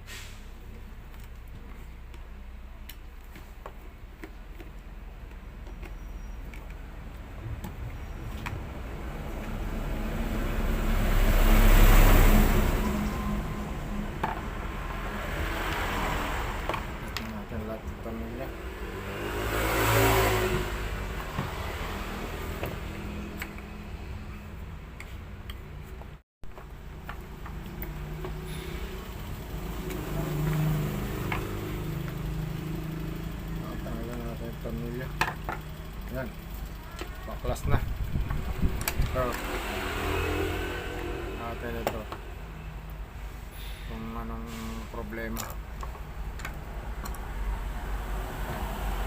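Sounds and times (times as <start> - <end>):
low motor hum: 26.5 - 43.1.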